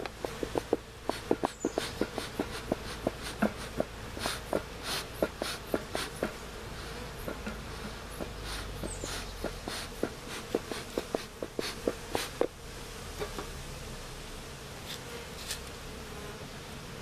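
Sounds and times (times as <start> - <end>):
sharp clicks and knocks: 0.0 - 3.9
honeybees buzzing: 0.0 - 17.0.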